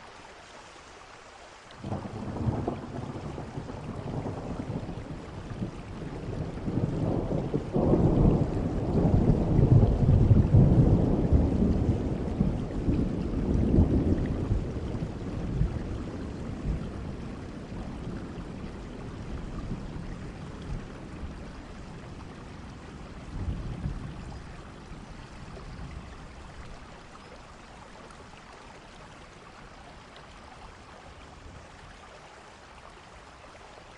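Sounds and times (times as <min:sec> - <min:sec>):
steady rain: 0:00.0 - 0:33.9
thunder rumbling: 0:01.8 - 0:26.8.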